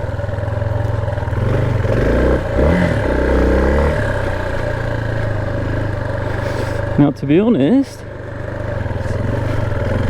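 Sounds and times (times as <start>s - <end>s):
motorbike engine idling and revving: 0.0s - 10.0s.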